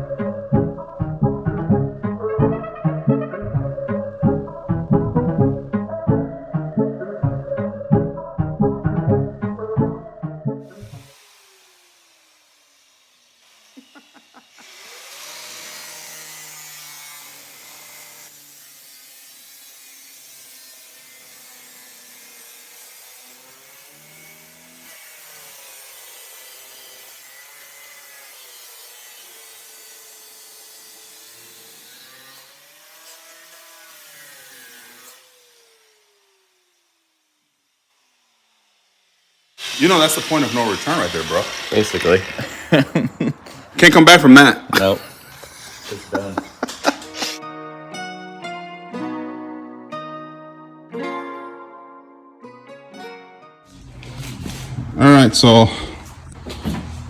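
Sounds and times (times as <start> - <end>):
power tool cutting sheet metal: 10.7 - 42.9, 45.1 - 47.4, 53.7 - 57.0.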